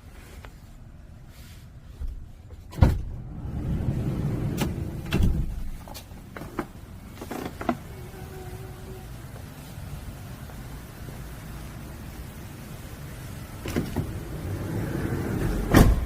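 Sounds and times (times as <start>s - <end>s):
low rumbling slide: 3.1s - 5.6s, 14.1s - 16.0s.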